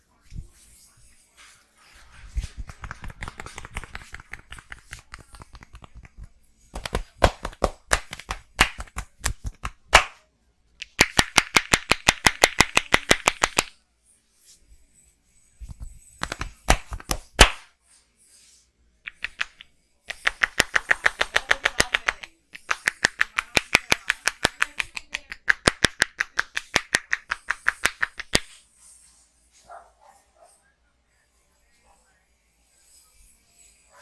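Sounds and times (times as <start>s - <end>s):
hands slapping head in massage: 2.4s - 10.2s, 10.8s - 13.8s, 15.6s - 17.7s, 19.1s - 28.6s
loud smacks: 16.2s - 17.7s.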